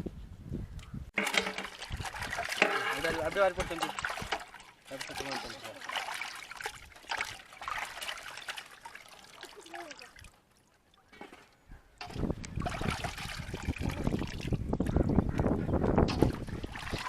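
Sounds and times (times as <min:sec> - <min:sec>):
water trickling and splashing: 0:01.1 - 0:17.0
rough water rushing: 0:01.2 - 0:10.5, 0:12.0 - 0:14.7.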